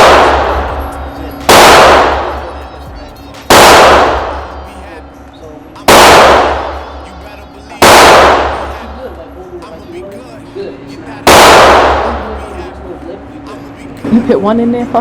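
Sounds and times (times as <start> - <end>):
gunshots with echo: 0.0 - 4.6, 5.8 - 7.2, 7.8 - 9.1, 11.2 - 12.6.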